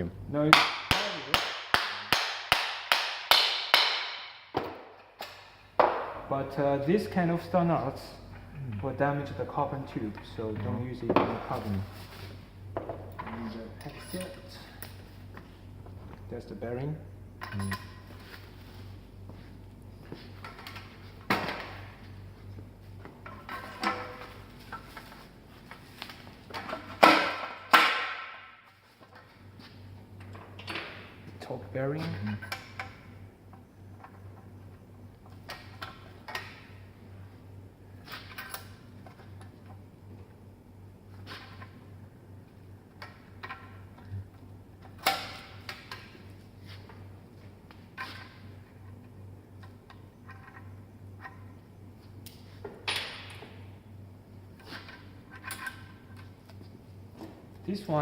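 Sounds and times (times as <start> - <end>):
sharp metallic knocks: 0.6 - 4.8
metal bicycle parts clinking: 17.4 - 18.3.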